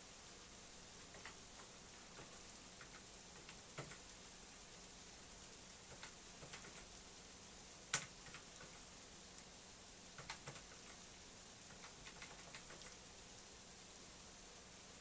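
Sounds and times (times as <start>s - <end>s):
faint clicks: 1.1s - 4.0s, 10.2s - 11.0s, 11.7s - 13.0s.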